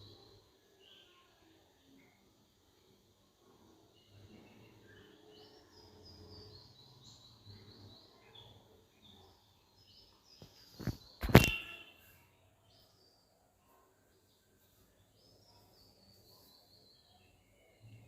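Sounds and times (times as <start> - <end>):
faint birds chirping: 0.0 - 18.0
sharp clicks of laptop parts: 10.8 - 11.8.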